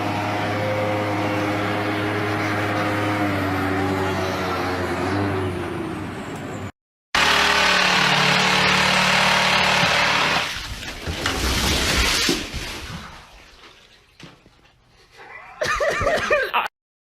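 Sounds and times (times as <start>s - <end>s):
heavy machinery engine noise: 0.0s - 10.6s.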